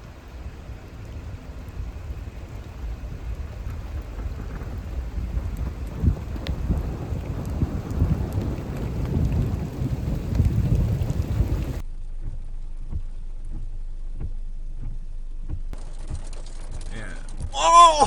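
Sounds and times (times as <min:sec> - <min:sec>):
heavy rain: 0:00.0 - 0:11.8, 0:17.6 - 0:18.0
thunder rumbling: 0:00.0 - 0:11.8.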